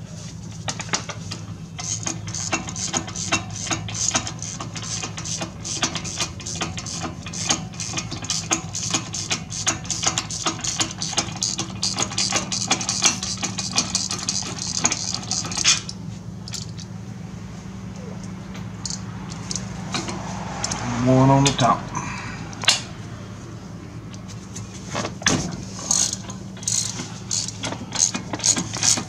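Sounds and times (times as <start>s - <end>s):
steady low hum: 0.0s - 29.0s
hand ratchet clicking rapidly: 1.8s - 16.8s, 25.9s - 29.0s.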